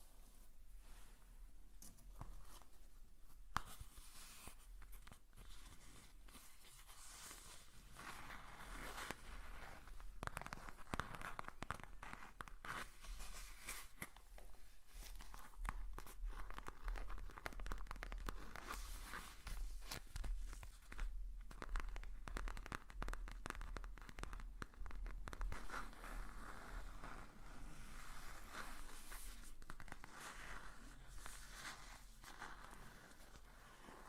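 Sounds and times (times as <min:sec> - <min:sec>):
crackling scratching and tapping: 0:07.3 - 0:27.4, 0:28.0 - 0:34.0.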